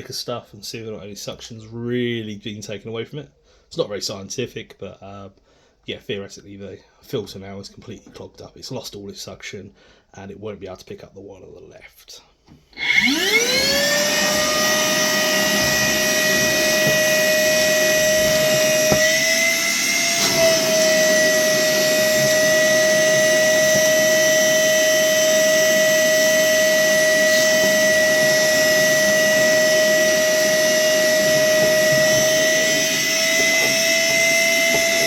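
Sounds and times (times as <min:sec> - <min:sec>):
vacuum cleaner whining: 0:12.7 - 0:35.0.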